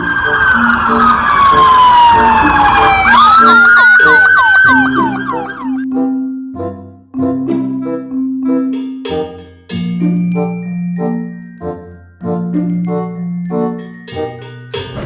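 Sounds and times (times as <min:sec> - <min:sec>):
siren wailing and chirping: 0:00.0 - 0:05.9
mallet percussion music: 0:03.1 - 0:15.0.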